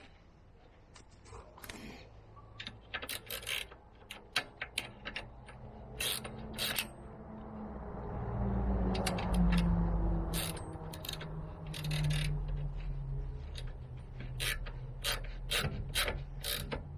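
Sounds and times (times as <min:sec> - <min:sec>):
metallic clicks of hand tools: 0:02.6 - 0:07.0, 0:08.9 - 0:12.7, 0:13.5 - 0:16.9.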